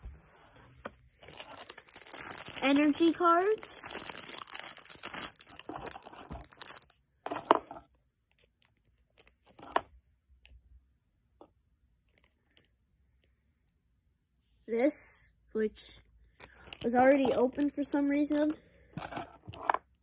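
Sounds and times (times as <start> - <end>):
rustling: 0.2 - 7.8
plastic packaging crinkling and tearing: 1.2 - 6.9.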